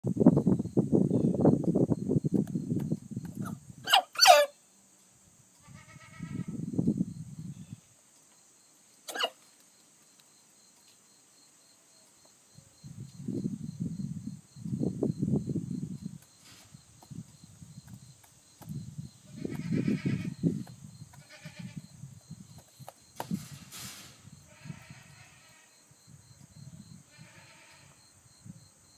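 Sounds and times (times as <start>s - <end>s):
rooster sneezing: 9.1s - 9.4s.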